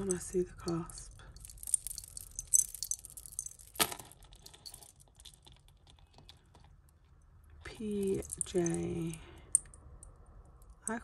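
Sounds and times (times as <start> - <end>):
metal chain jewellery jingling: 0.0 - 6.1, 8.0 - 9.7.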